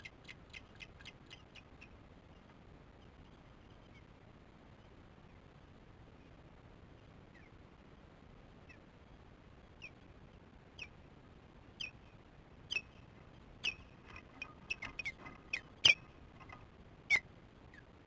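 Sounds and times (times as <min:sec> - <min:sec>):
osprey alarm calls: 0:12.7 - 0:17.8.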